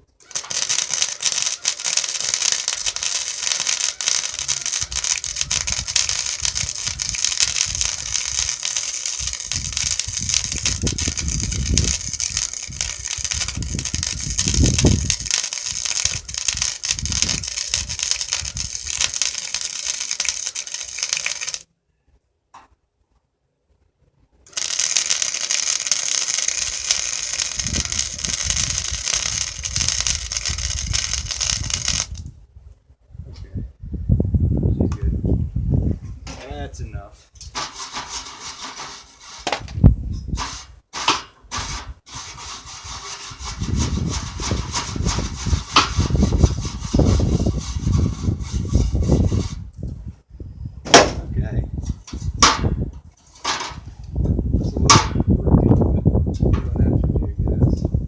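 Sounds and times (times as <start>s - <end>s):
arc welding crackle: 0.2s - 21.7s, 24.4s - 32.3s, 40.4s - 49.6s.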